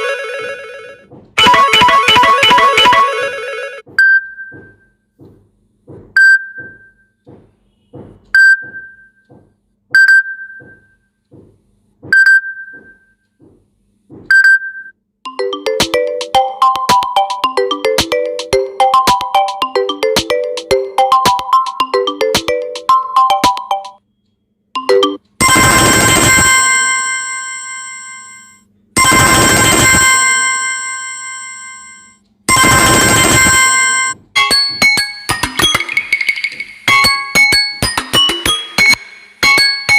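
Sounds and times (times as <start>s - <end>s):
melodic synth-chime ringtone: 0.0s - 3.8s, 15.3s - 24.0s, 24.8s - 39.9s
soft low taps: 10.6s - 14.3s.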